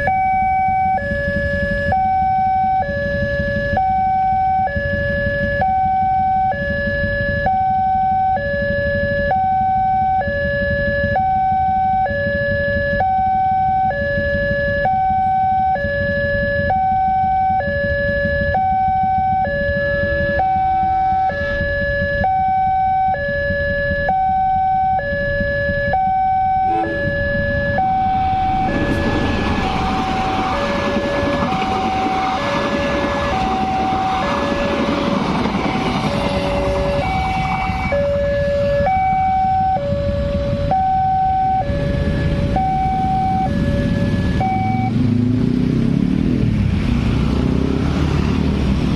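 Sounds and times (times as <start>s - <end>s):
level crossing two-tone alarm: 0.0s - 45.0s
train passing rumble: 19.4s - 22.2s, 26.3s - 40.9s.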